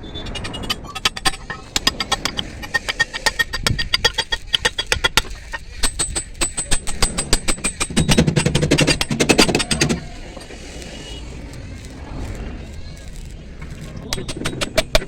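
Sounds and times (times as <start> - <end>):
low rattle: 0.0 - 15.0
rapid even knocking: 0.4 - 10.6.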